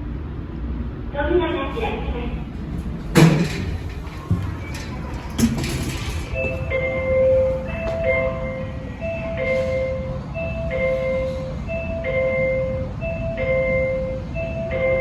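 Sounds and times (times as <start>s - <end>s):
elevator two-note door chime: 3.2s - 15.0s.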